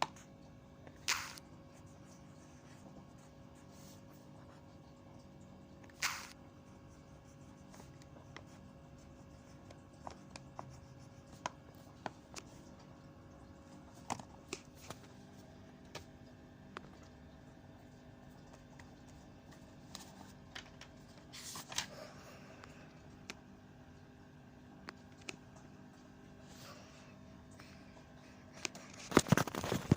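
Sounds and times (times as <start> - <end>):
faint room hum: 0.0 - 29.9.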